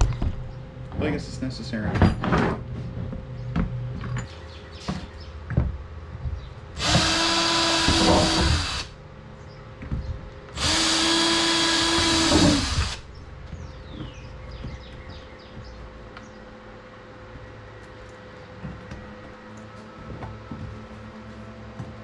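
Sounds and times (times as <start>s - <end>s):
power drill drilling: 6.8s - 8.9s, 10.6s - 13.0s.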